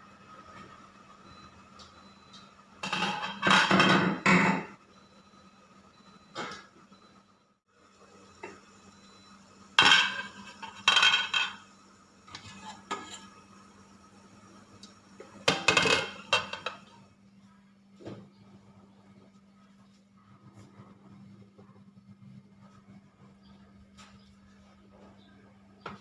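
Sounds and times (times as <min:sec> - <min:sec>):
dishes and cutlery clattering: 0:02.8 - 0:04.7, 0:09.8 - 0:11.6.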